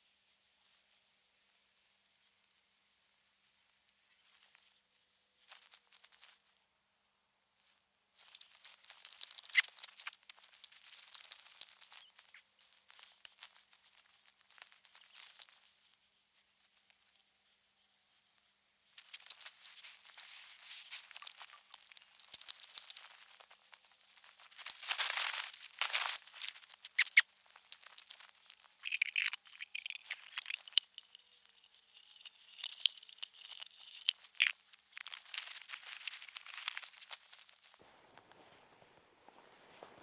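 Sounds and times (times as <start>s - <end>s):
faint kettle hiss: 0.0s - 40.0s
wood fire crackling and popping: 19.0s - 40.0s.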